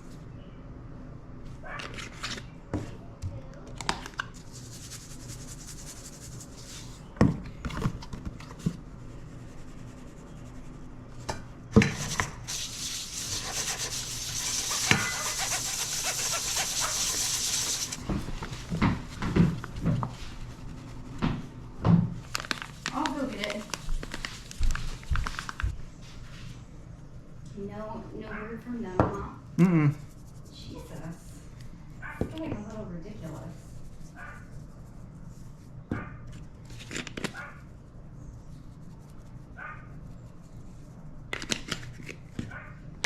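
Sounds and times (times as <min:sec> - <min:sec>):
steady hiss: 0:12.5 - 0:18.1.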